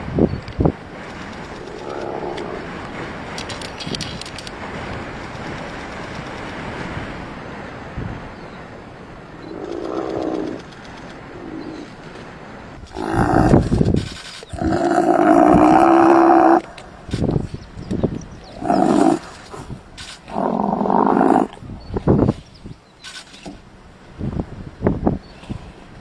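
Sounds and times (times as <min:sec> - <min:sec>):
low animal call: 0:01.5 - 0:02.9, 0:09.4 - 0:10.7, 0:12.9 - 0:13.8, 0:14.5 - 0:16.8, 0:18.5 - 0:19.7, 0:20.3 - 0:21.6
loud animal call burst: 0:18.6 - 0:19.6.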